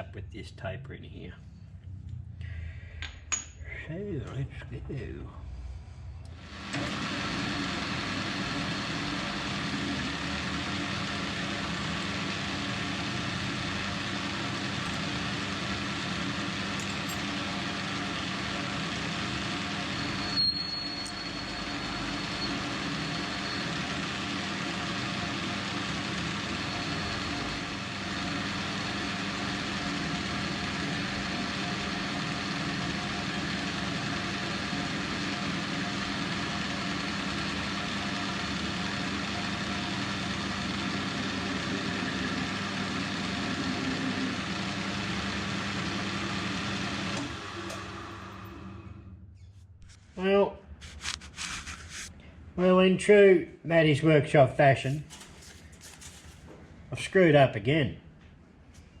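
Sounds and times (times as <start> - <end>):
metal lathe humming: 6.3 - 49.1.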